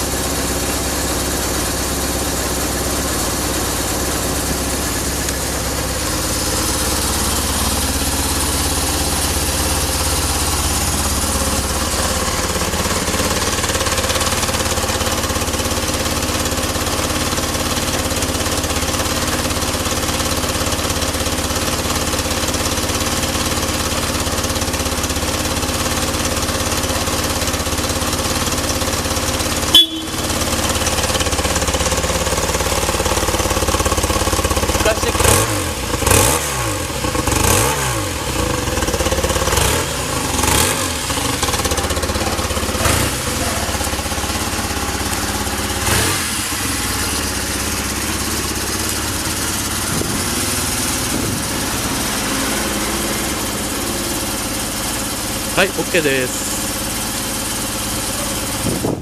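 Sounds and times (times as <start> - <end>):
motorcycle engine idling: 0.0 - 59.0
engine throttle blip: 29.4 - 32.0.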